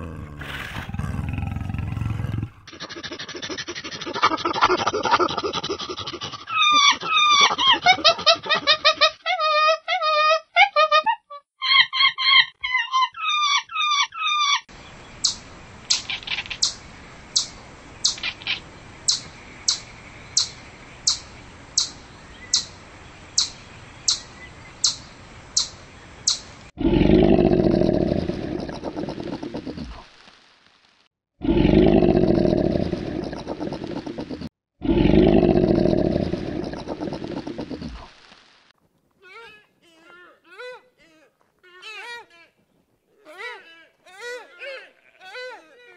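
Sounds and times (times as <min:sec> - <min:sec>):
rough roar-like animal calls: 0:00.0 - 0:02.7.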